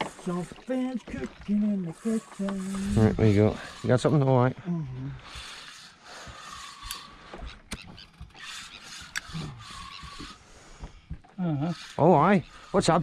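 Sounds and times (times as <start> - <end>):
fishing reel winding: 5.3 - 7.2, 8.3 - 10.4.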